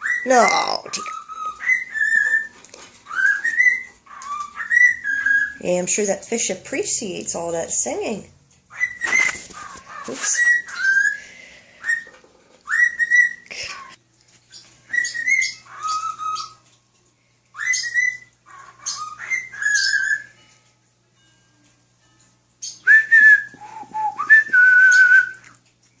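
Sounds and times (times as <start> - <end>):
cockatiel whistling a tune: 0.0 - 5.6, 8.7 - 9.4, 10.2 - 16.6, 17.5 - 20.4, 22.6 - 25.6.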